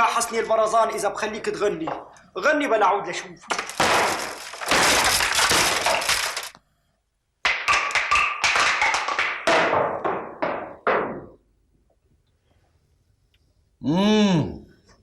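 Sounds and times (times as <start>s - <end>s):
glass smashing: 3.4s - 6.6s
dense crash: 3.5s - 6.5s.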